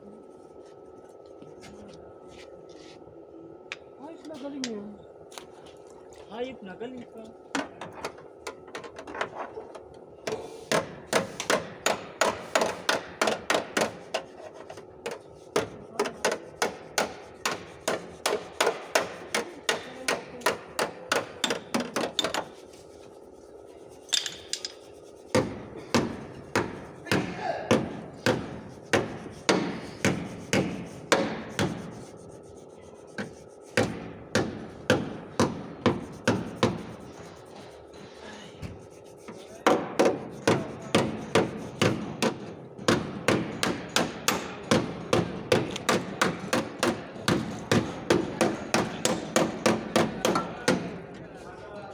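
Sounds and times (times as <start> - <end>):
hammer tapping sheet metal: 39.7 - 51.0.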